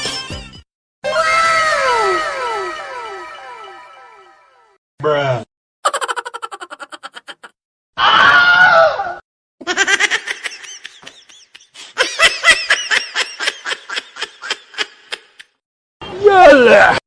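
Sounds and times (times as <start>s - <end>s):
fast high-pitched laughter: 5.8s - 7.6s.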